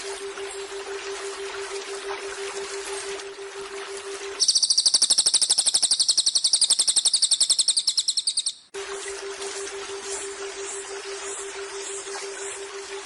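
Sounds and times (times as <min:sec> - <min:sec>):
songbird fast high trill: 0:04.4 - 0:08.7.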